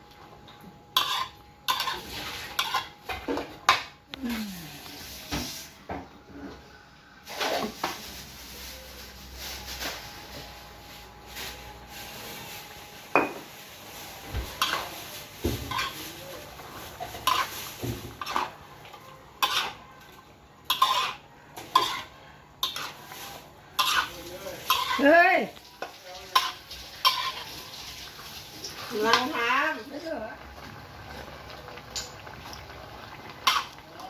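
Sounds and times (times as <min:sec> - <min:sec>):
metal utensils clinking on pots: 0:01.0 - 0:03.8, 0:14.6 - 0:28.0, 0:31.8 - 0:32.4.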